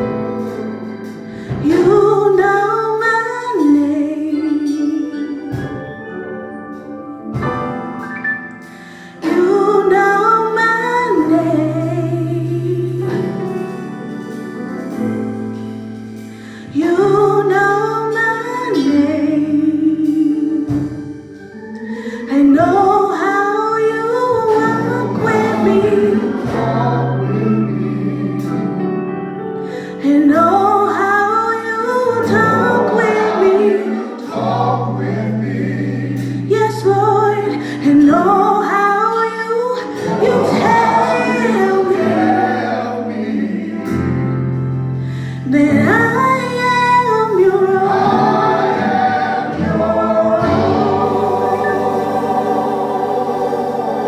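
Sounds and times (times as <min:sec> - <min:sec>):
gospel singing: 0:00.0 - 0:07.9, 0:08.8 - 0:54.0
instrumental chords and bass: 0:45.6 - 0:54.0.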